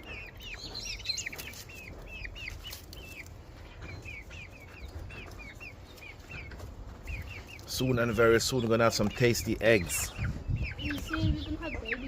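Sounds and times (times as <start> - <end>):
young hens peeping: 0.0 - 12.0.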